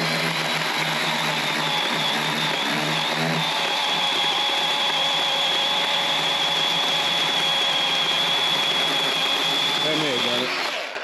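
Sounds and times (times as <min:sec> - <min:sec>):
sawmill engine running: 0:00.0 - 0:11.0.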